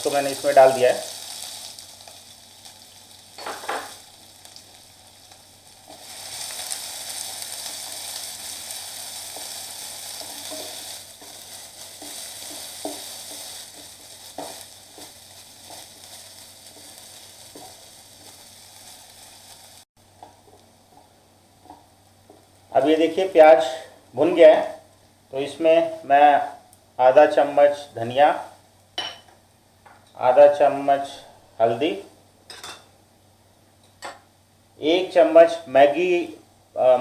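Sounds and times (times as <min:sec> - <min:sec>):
onion sizzling in hot fat: 0:00.0 - 0:37.0
spoon knocking on pan: 0:12.0 - 0:15.1.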